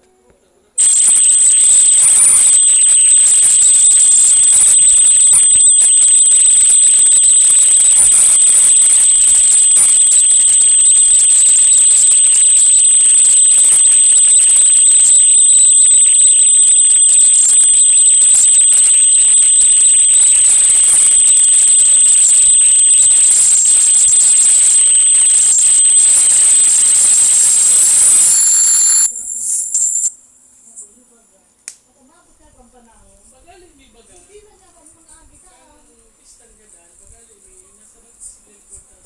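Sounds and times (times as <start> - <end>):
high-pitched electronic tone: 0.8 - 30.1.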